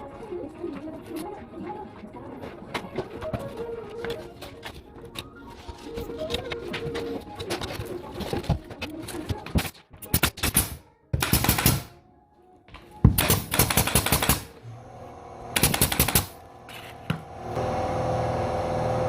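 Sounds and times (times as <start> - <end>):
power fastening tool clacking: 13.3 - 17.6
steady hum with held tone: 14.6 - 19.0.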